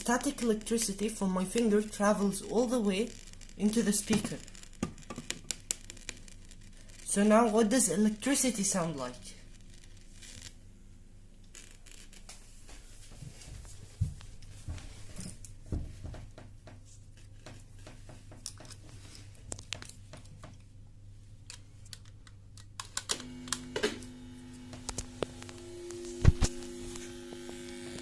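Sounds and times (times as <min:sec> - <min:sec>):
cable clicks and crackles: 0:00.0 - 0:08.4, 0:11.3 - 0:12.5, 0:17.4 - 0:20.8, 0:21.4 - 0:28.0
speaker mains hum: 0:00.0 - 0:28.0.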